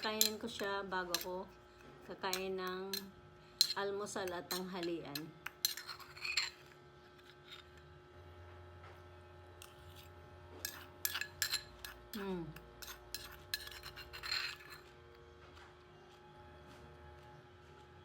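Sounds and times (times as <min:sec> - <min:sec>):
spoon clinking against dish: 0:00.0 - 0:01.4, 0:10.6 - 0:14.8.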